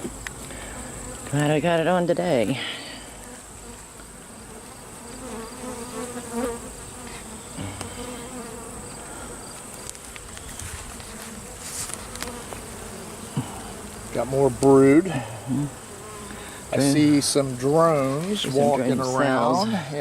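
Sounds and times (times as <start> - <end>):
honeybees buzzing: 0.0 - 20.0.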